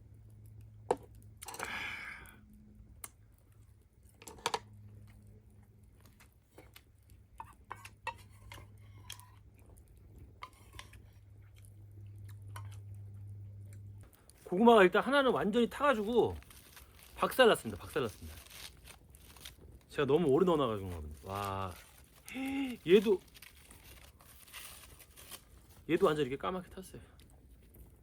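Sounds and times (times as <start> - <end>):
low steady hum: 0.0 - 28.0
person chewing food: 3.0 - 14.4
small clicks and knocks: 4.0 - 5.2.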